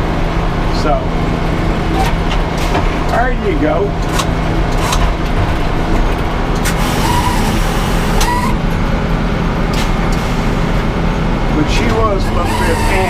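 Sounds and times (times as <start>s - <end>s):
sawmill engine droning: 0.0s - 13.0s
brief squeak: 7.0s - 7.6s, 8.2s - 8.6s, 12.2s - 13.0s.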